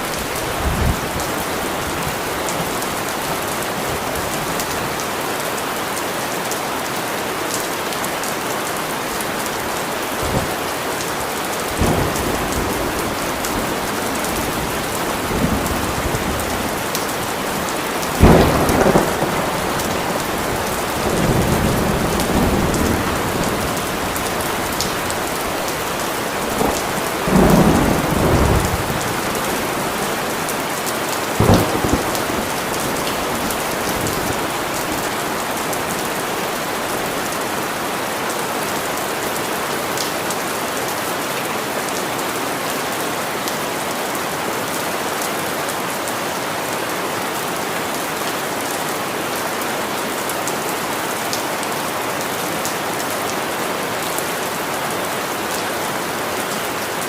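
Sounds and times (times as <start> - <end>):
steady rain: 0.0 - 57.0
sharp thunder clap: 11.8 - 14.8, 18.2 - 23.6, 31.4 - 33.1
thunder rumble: 11.8 - 30.0, 31.4 - 34.8.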